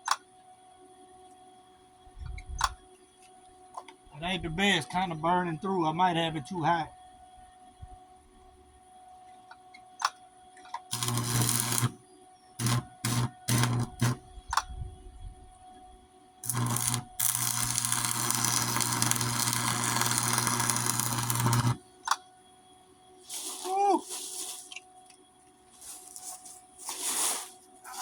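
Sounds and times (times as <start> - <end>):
arc welder buzzing hiss: 10.9 - 12.0, 12.6 - 14.5, 16.4 - 22.2, 23.2 - 24.8, 25.8 - 28.0.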